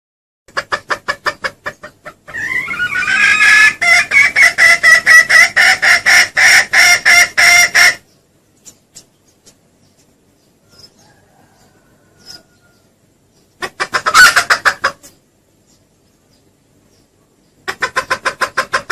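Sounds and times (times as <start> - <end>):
junglefowl lure clucks: 13.6 - 15.2, 17.6 - 18.9.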